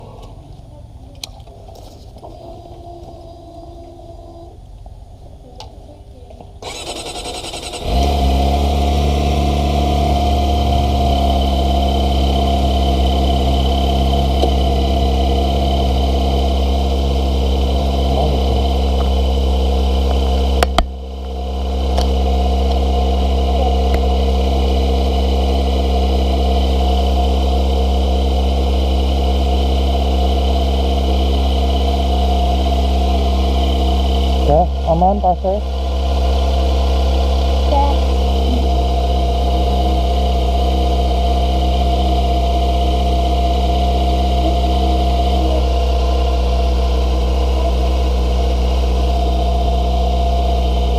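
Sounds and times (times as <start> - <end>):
motorcycle engine idling: 0.0 - 50.9
engine starter cranking: 6.6 - 8.8.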